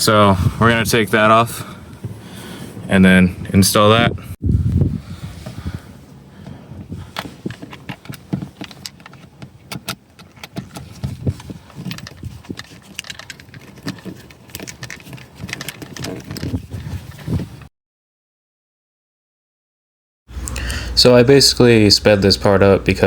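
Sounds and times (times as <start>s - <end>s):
hardware clicks and rattles: 7.1s - 17.2s.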